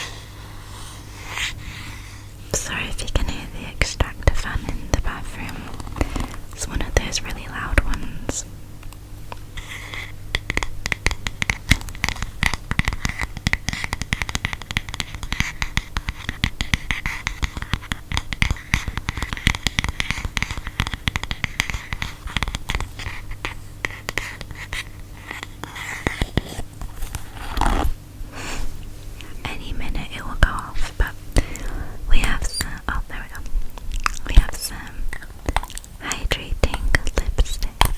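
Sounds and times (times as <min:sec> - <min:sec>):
rapid scratching on object: 0:09.6 - 0:28.0.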